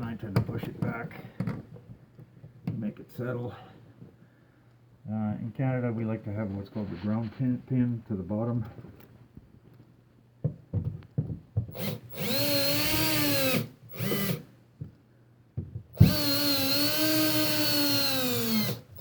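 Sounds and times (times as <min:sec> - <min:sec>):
power drill motor whining: 0:11.7 - 0:14.5, 0:16.0 - 0:19.0.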